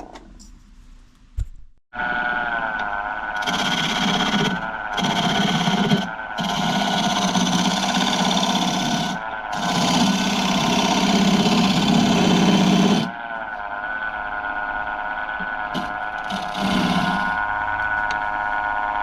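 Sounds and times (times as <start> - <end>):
lathe motor hum: 2.0 - 19.0
gouge scraping wood: 3.4 - 13.1, 15.4 - 17.5.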